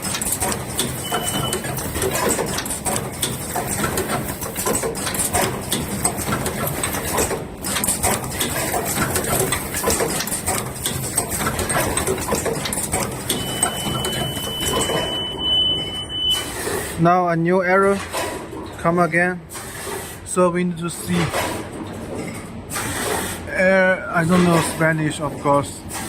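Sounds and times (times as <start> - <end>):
machine clattering and clicking: 0.0 - 17.0, 17.6 - 20.2, 20.8 - 23.5, 24.1 - 26.0
high-pitched alarm tone: 13.3 - 16.5.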